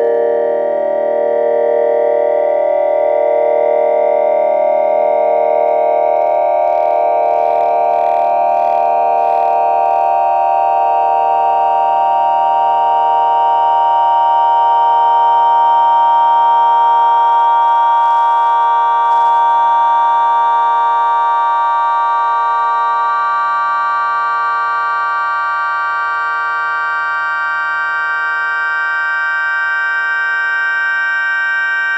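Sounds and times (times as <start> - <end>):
low pulsing synth tones: 4.4 - 10.9
synthesized drone with gliding tones: 4.4 - 11.0.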